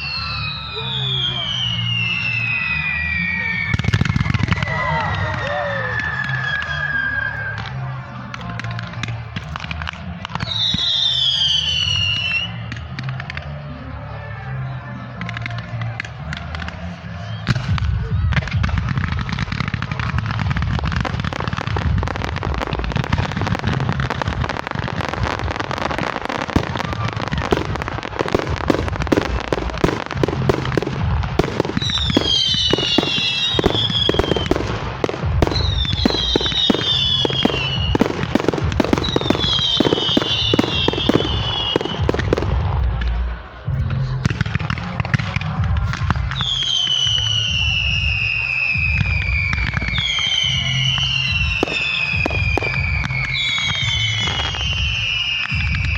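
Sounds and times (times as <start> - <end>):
falling firework whistles: 0.0 - 7.6, 10.4 - 12.6, 26.0 - 42.4, 46.3 - 55.9
fireworks crackling pops and bangs: 0.0 - 13.7, 15.2 - 55.9.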